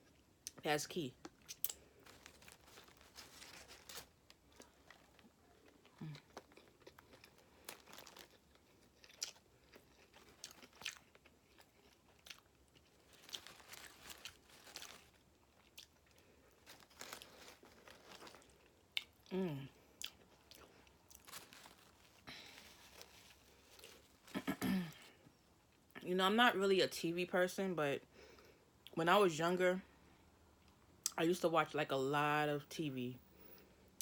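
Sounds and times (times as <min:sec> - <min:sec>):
person chewing and crunching food: 0:00.0 - 0:25.9.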